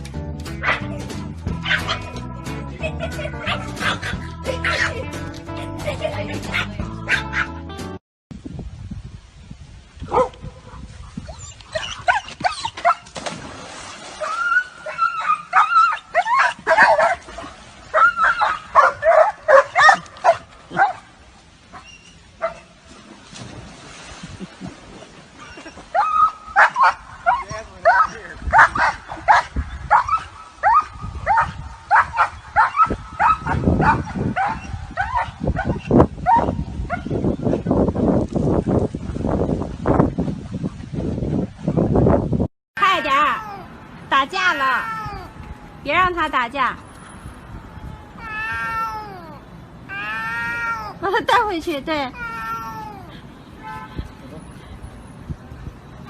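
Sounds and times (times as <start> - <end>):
dog whining and yelping: 11.2 - 13.0
dog yipping: 11.2 - 13.1, 14.2 - 17.2, 17.9 - 21.0, 25.4 - 37.1, 48.2 - 51.0, 52.2 - 53.2.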